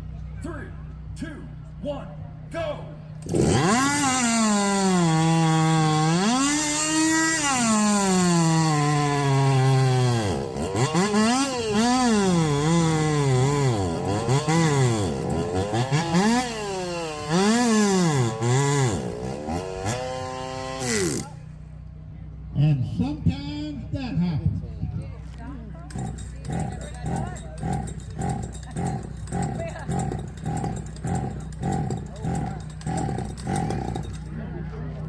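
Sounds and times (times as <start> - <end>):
chainsaw cutting logs: 3.2 - 21.6, 25.8 - 34.5.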